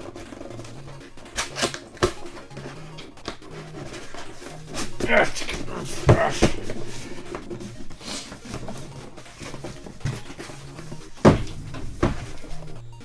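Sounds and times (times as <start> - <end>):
cardboard box being opened: 0.0 - 12.8
sharp knocks: 3.9 - 12.8.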